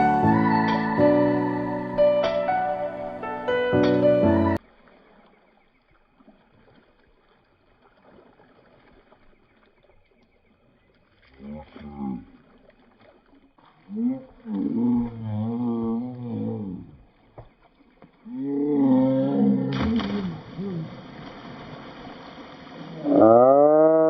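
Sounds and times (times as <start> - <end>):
piano music: 0.0 - 4.6.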